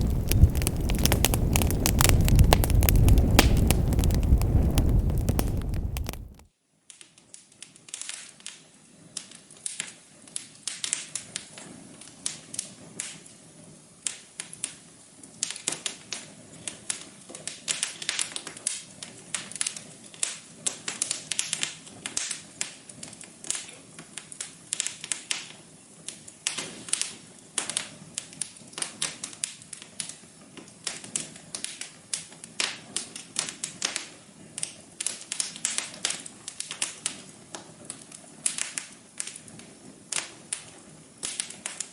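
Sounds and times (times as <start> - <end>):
wood fire crackling: 0.0 - 6.5, 14.0 - 41.9
faint steady hiss: 0.0 - 41.9.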